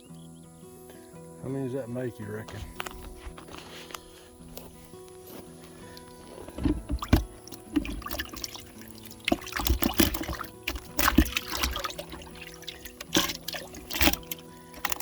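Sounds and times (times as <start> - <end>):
water splashing and trickling: 5.6 - 15.0.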